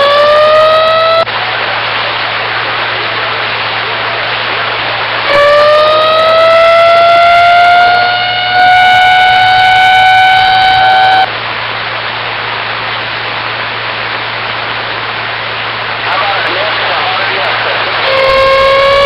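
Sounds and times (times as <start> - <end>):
loud siren-like tone: 0.0 - 1.3, 5.2 - 11.3, 18.0 - 19.0
low hum: 0.0 - 19.0.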